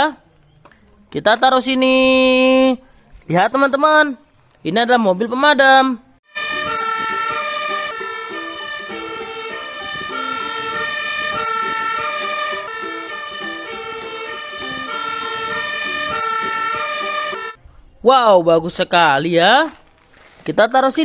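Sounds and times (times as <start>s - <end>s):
toy siren electronic tones: 6.4s - 17.6s.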